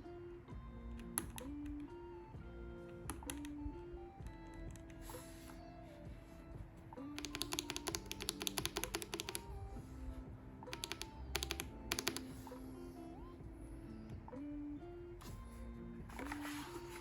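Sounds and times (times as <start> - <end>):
mechanical keyboard clacks: 7.2 - 9.5, 10.7 - 12.3.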